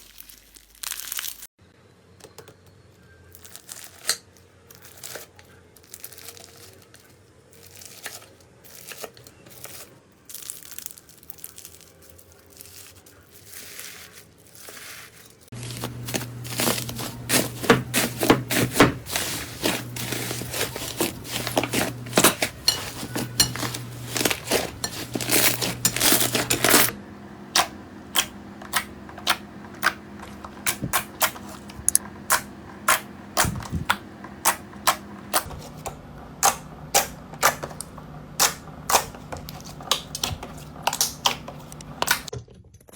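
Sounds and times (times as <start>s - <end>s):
slime crackling and popping: 0.0s - 1.5s, 9.7s - 14.2s.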